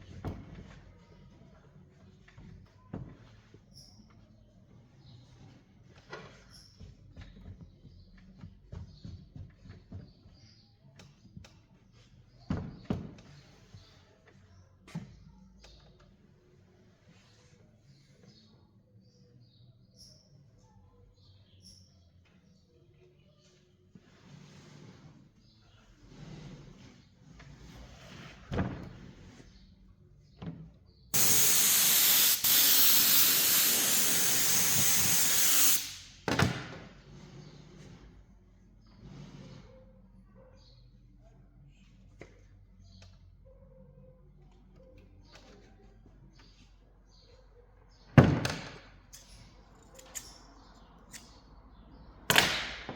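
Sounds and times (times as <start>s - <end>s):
loud spraying hiss: 31.2s - 36.2s.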